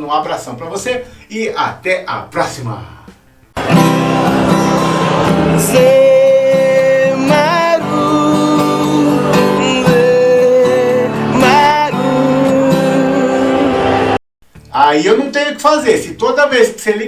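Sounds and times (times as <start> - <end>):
guitar accompaniment: 0.0 - 16.8
person singing long notes: 4.0 - 14.2.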